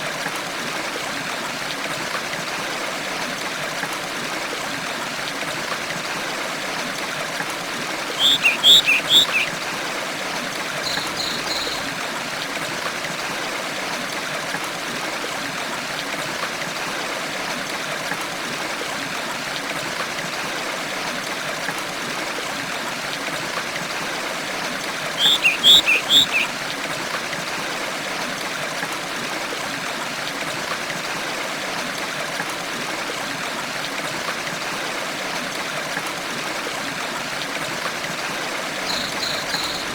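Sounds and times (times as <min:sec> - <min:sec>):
stream running over stones: 0:00.0 - 0:39.9
songbird chirping: 0:08.1 - 0:09.5, 0:10.8 - 0:11.9, 0:25.2 - 0:26.5, 0:38.9 - 0:39.9.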